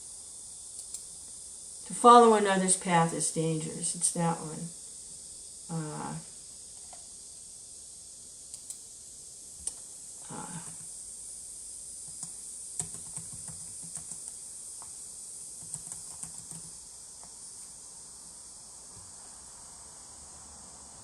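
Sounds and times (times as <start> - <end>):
background hiss: 0.0 - 21.0
computer keyboard typing: 12.1 - 15.0, 15.6 - 17.4.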